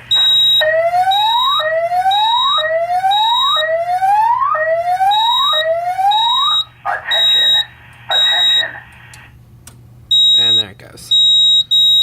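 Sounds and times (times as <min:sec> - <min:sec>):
high steady alarm tone: 0:00.0 - 0:08.8, 0:10.1 - 0:12.0
rising whoop alarm tone: 0:00.1 - 0:06.7.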